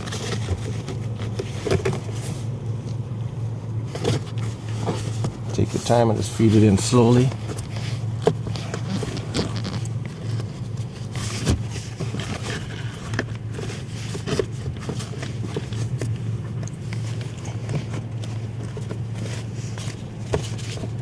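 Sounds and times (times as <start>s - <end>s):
steady low hum: 0.0s - 21.0s
filter scraping plastic housing: 6.8s - 21.0s.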